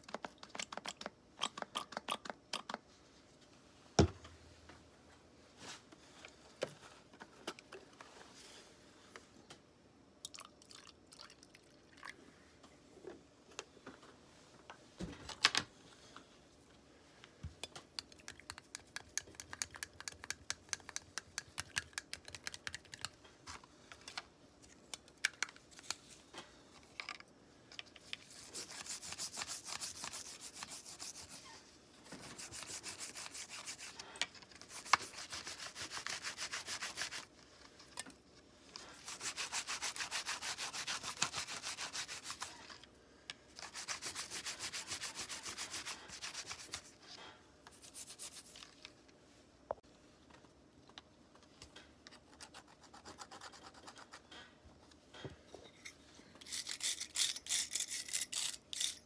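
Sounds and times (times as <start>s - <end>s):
sandpaper rasping: 28.3s - 31.5s, 32.1s - 34.0s, 34.7s - 37.3s, 39.0s - 42.6s, 43.6s - 47.0s, 47.8s - 48.6s.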